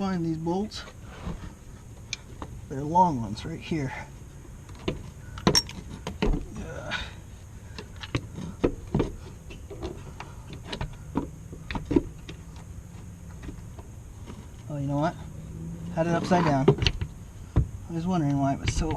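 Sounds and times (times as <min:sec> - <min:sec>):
bolts and hand tools clinking: 0:04.7 - 0:06.3.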